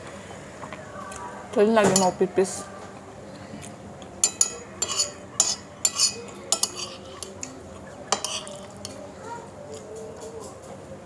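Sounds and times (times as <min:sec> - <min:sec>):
cutlery clinking against dishes: 0:04.2 - 0:09.0.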